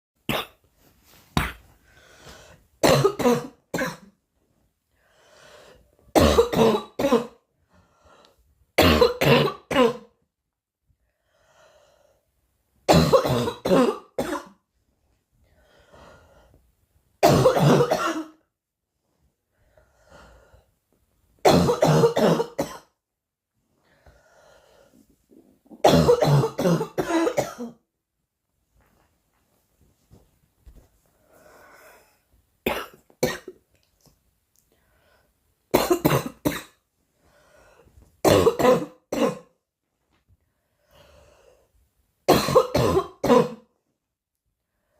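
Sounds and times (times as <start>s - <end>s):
quiet breaths: 1.1s - 2.8s, 4.8s - 6.1s, 7.5s - 8.6s, 10.9s - 12.5s, 15.1s - 16.9s, 19.0s - 21.1s, 23.7s - 25.8s, 28.8s - 32.5s, 33.7s - 35.7s, 37.0s - 38.2s, 40.0s - 42.0s, 44.4s - 44.9s
girl coughing: 2.8s - 4.1s, 6.2s - 7.4s, 8.8s - 10.1s, 12.9s - 14.6s, 17.2s - 18.4s, 21.5s - 22.9s, 25.8s - 27.8s, 32.7s - 33.6s, 35.8s - 36.8s, 38.3s - 39.5s, 42.3s - 43.7s.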